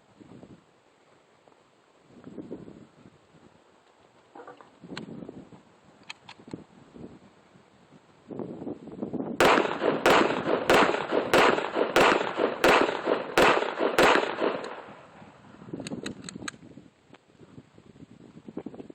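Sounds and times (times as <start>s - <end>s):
sharp bangs with rumbling: 9.4s - 15.0s.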